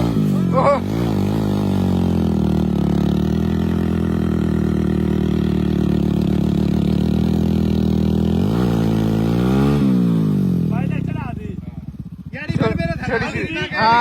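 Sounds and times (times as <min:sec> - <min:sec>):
heavy diesel engine under load: 0:00.0 - 0:10.7.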